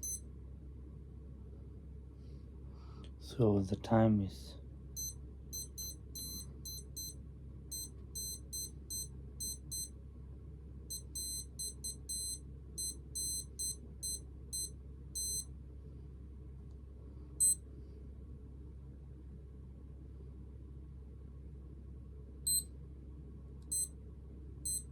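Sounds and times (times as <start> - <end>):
digital watch beeping: 0.0 - 0.2, 5.0 - 9.9, 10.9 - 15.4, 24.7 - 24.9.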